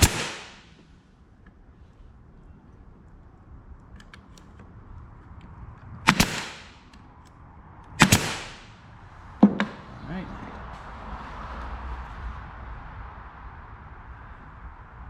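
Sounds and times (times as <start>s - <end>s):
nail gun firing: 0.0s - 0.8s, 6.1s - 7.0s, 8.0s - 8.7s, 9.4s - 9.9s.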